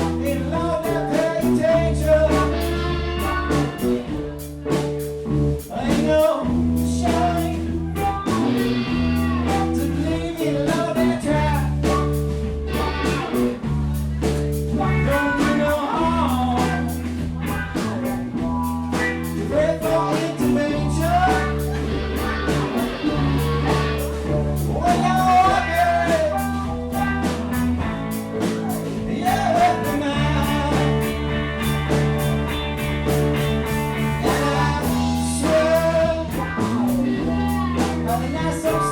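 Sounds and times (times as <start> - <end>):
blues-rock band playing: 0.0 - 38.9
slide guitar gliding: 14.7 - 38.9.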